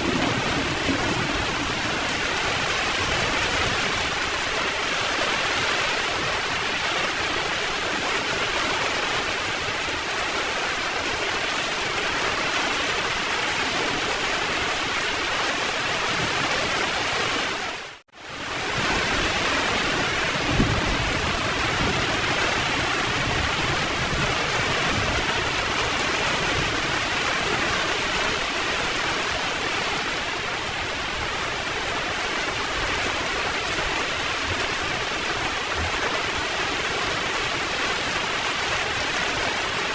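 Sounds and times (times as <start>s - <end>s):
low rumble of thunder: 0.0s - 4.0s, 18.8s - 25.4s
heavy rain: 0.0s - 39.9s.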